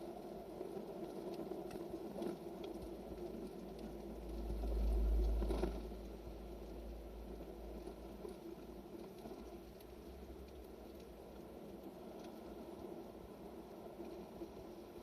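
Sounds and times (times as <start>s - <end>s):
road and tyre noise in car cabin: 1.5s - 15.0s
deep rumble: 3.5s - 8.8s.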